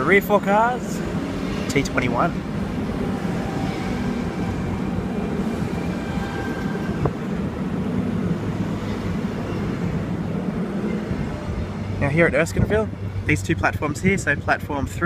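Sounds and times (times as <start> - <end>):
train rumbling past: 0.0 - 15.0.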